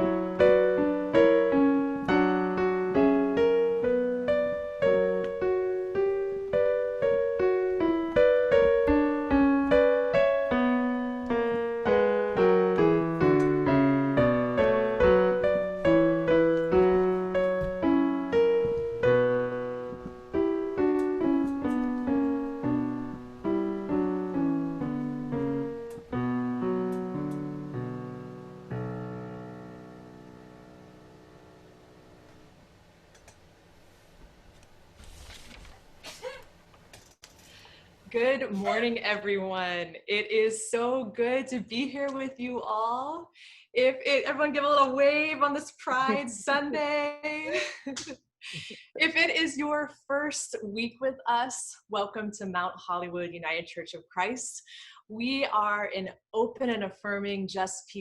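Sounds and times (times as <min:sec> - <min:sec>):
solo piano piece: 0:00.0 - 0:33.8.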